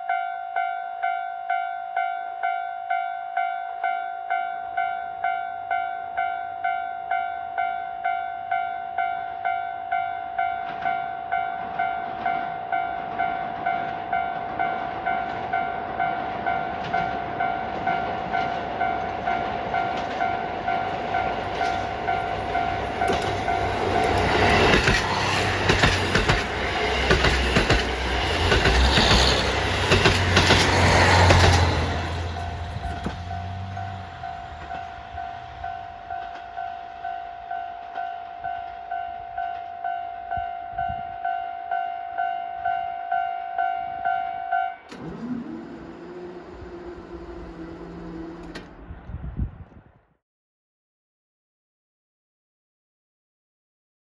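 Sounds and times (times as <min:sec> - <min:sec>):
railroad crossing bell ringing: 0:00.0 - 0:44.9
train wheels clattering over rail joints: 0:16.8 - 0:34.9
diesel train engine rumble: 0:17.4 - 0:37.1, 0:44.9 - 0:49.7.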